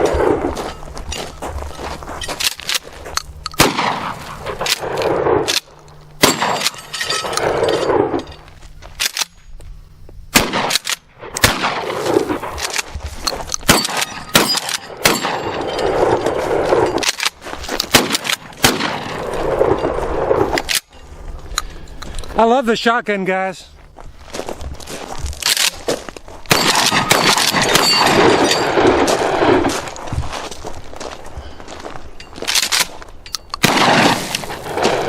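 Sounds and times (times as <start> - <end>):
shotgun shots echoing: 3.6 - 8.2, 10.3 - 12.7, 13.6 - 16.2, 17.9 - 20.4, 26.5 - 29.7, 33.6 - 35.0.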